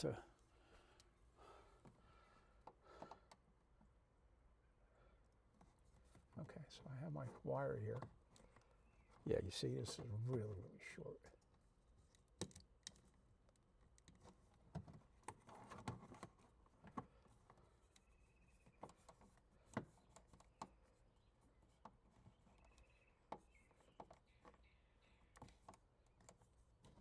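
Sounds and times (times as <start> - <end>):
faint clicks and taps: 7.3 - 10.7, 11.3 - 27.0.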